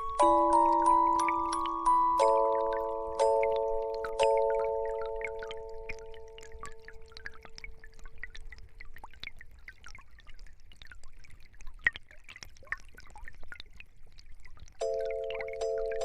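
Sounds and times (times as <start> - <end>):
held chime tone: 0.0 - 6.4
stream trickling and gurgling: 0.0 - 16.0.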